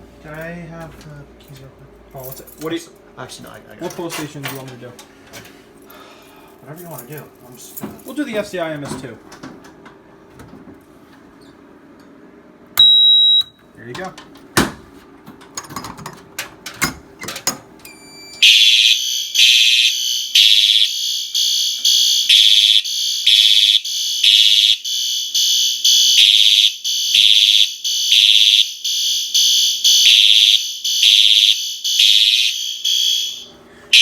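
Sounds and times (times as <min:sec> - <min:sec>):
fire alarm horns pulsing: 0:17.9 - 0:34.0.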